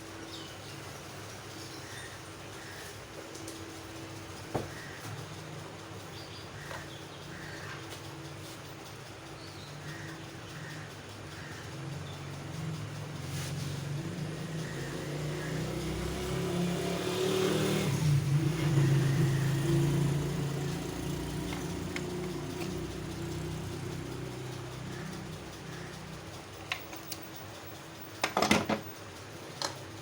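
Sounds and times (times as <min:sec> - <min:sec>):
vehicle engine passing by: 0:11.4 - 0:26.2.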